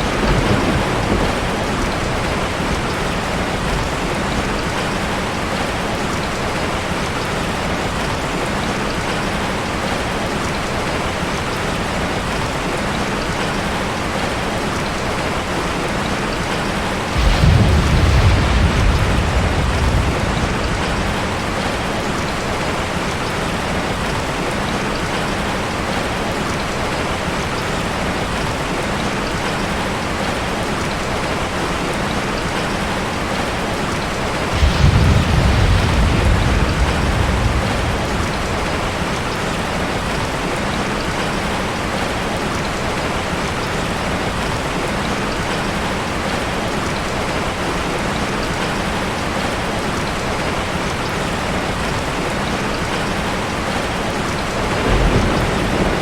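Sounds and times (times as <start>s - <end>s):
rain falling: 0.0s - 56.0s
low rumble: 17.2s - 22.5s, 34.5s - 40.4s.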